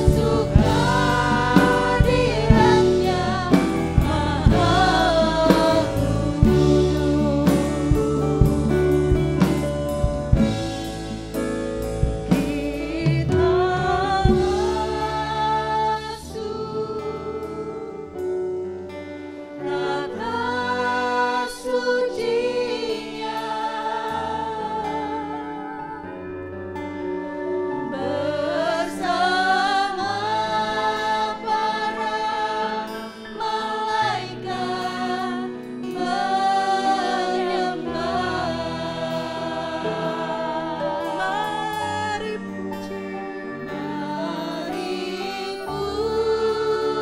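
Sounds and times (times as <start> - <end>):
drum kit beating: 0.0 - 15.4
singers with live band: 0.0 - 27.0, 27.6 - 47.0.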